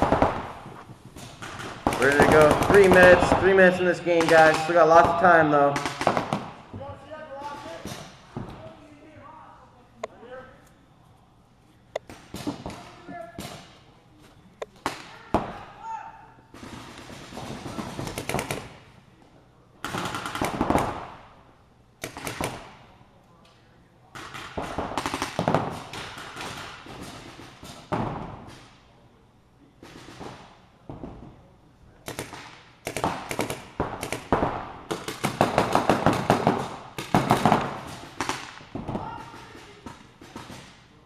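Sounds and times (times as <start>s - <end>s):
paintball markers firing: 0.0s - 6.6s, 16.5s - 18.8s, 32.0s - 40.9s.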